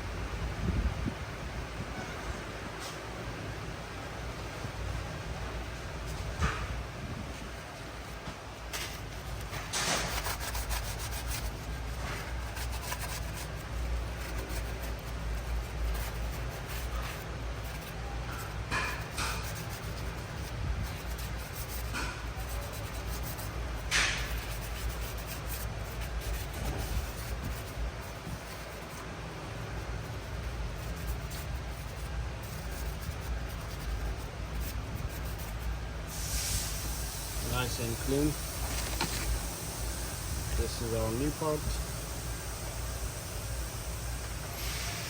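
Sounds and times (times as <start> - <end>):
steady low hum: 0.0 - 45.0
hand scrubbing engine part: 8.1 - 29.0, 29.6 - 41.8.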